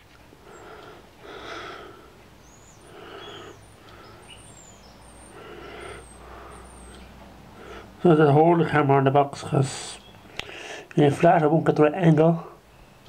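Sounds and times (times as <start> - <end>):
person breathing: 0.4 - 8.0, 10.3 - 10.9
faint bird chirps: 1.8 - 7.8.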